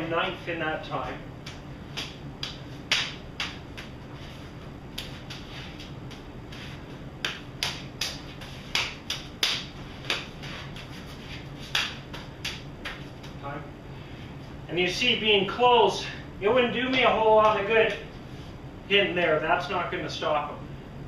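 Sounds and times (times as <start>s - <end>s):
hands slapping together: 1.4s - 4.0s, 4.9s - 13.4s.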